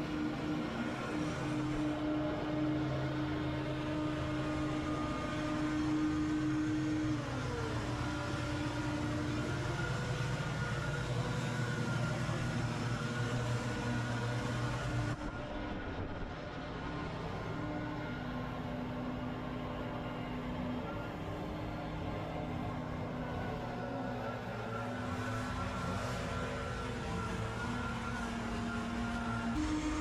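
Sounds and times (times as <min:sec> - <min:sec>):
engine running: 0:20.9 - 0:30.0.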